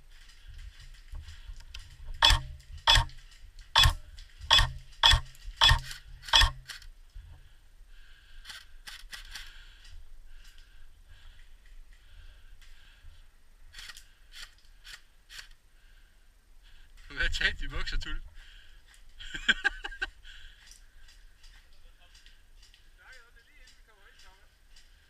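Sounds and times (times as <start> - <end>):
airsoft gun shots: 2.2 - 3.1, 3.8 - 6.7
faint clicks: 20.6 - 25.0.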